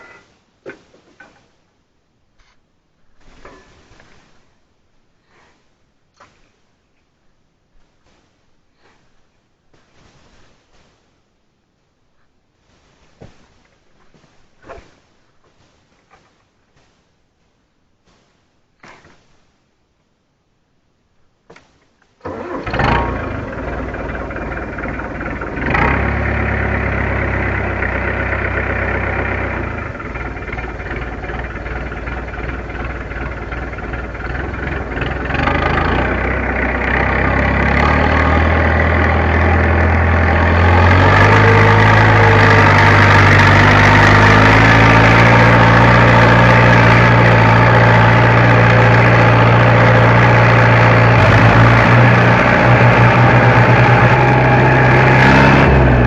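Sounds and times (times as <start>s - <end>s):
tractor diesel engine revving: 22.2s - 56.0s
engine knock: 22.7s - 56.0s.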